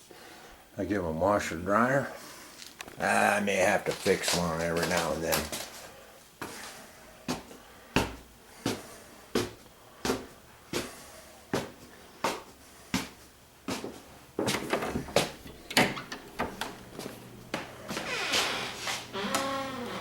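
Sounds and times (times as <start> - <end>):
footsteps on hard floor: 6.4 - 15.5, 16.4 - 20.0.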